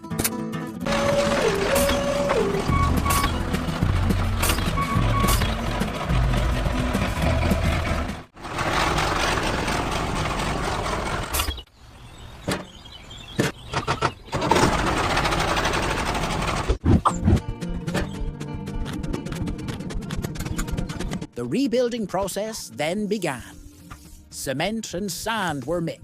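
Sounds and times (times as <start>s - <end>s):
tractor engine running: 0.8s - 11.7s, 13.4s - 16.8s, 17.4s - 21.4s.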